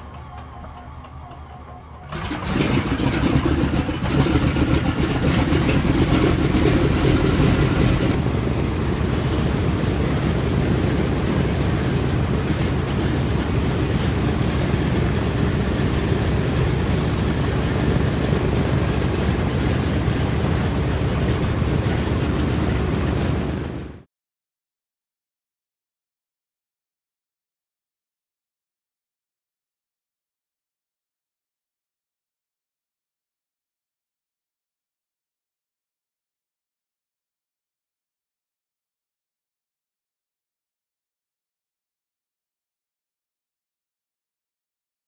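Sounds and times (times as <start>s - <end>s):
aircraft engine: 0.0s - 24.1s.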